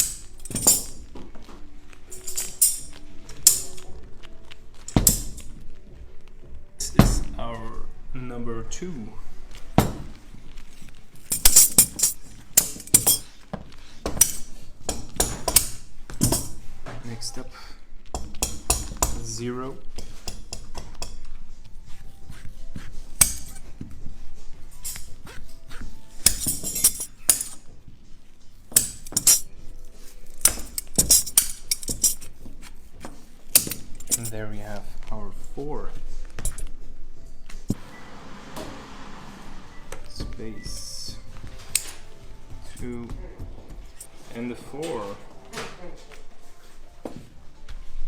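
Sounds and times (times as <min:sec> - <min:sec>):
clinks of hard candy tools: 0:11.2 - 0:13.4, 0:26.1 - 0:27.7.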